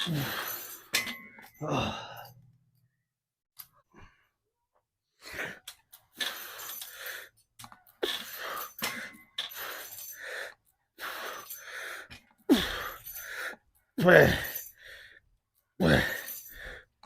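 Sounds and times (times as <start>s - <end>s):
man grunting: 1.6s - 2.2s, 14.0s - 14.6s, 15.8s - 16.4s
man breathing hard: 1.7s - 2.4s, 5.1s - 17.0s.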